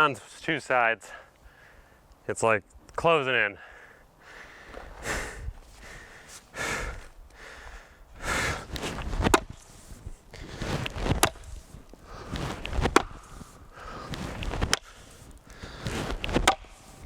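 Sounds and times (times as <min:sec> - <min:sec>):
person breathing hard: 0:01.1 - 0:02.1, 0:03.6 - 0:09.0, 0:12.0 - 0:16.2
axe chopping wood log: 0:09.2 - 0:09.6, 0:11.1 - 0:11.4, 0:12.8 - 0:13.2, 0:16.3 - 0:16.7.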